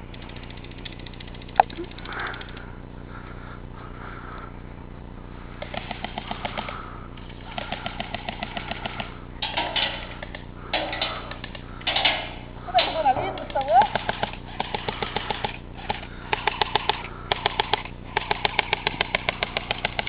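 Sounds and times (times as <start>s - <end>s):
airsoft gun firing bursts: 5.6s - 10.4s, 13.4s - 20.0s.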